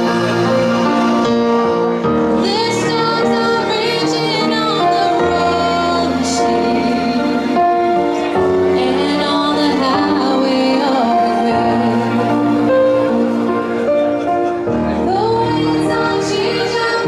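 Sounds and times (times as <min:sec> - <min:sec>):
person singing long held notes: 0:00.0 - 0:13.6
live pop band: 0:00.0 - 0:17.0.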